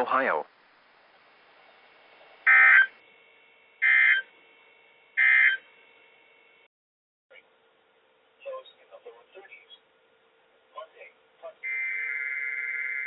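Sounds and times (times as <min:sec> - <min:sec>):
harsh digital squawks: 0:02.4 - 0:03.0, 0:03.8 - 0:04.3, 0:05.2 - 0:05.6, 0:11.6 - 0:13.0.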